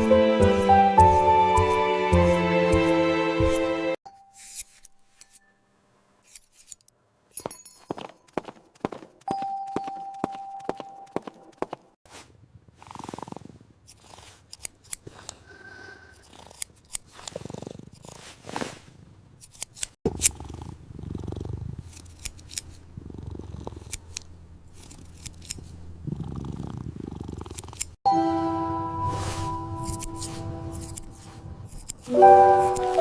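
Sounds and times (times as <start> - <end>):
music: 0.0 - 4.0, 28.1 - 31.5, 32.1 - 33.0
small clicks and swishes: 6.2 - 7.4, 19.4 - 20.3, 21.9 - 22.8
cat purring: 12.4 - 14.4, 15.3 - 19.4, 20.1 - 22.1, 22.7 - 24.1, 26.0 - 28.0.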